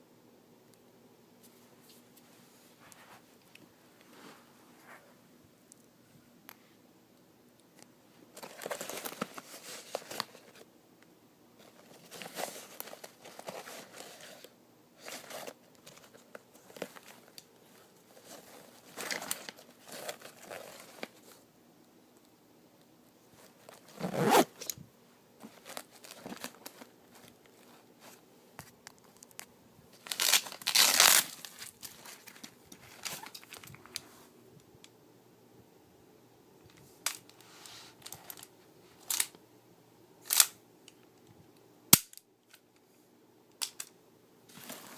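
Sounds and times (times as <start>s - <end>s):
fabric crinkling: 8.3s - 10.7s, 11.6s - 21.4s, 23.3s - 24.8s, 25.4s - 34.2s, 44.5s - 44.9s
velcro ripping: 23.9s - 24.6s, 30.0s - 31.5s.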